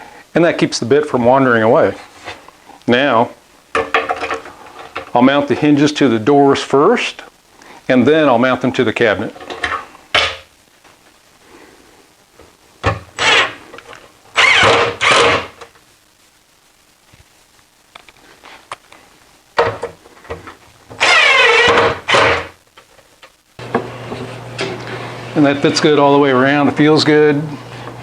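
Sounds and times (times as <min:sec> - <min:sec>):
power drill driving screws: 0:13.2 - 0:13.6, 0:14.4 - 0:15.6, 0:21.0 - 0:22.5.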